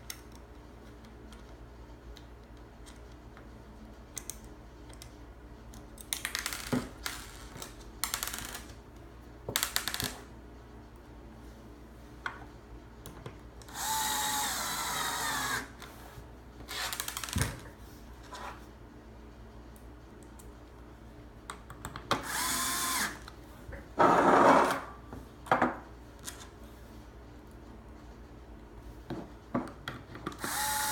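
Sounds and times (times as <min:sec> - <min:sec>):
power screwdriver whining: 0:13.7 - 0:15.7, 0:30.4 - 0:30.9.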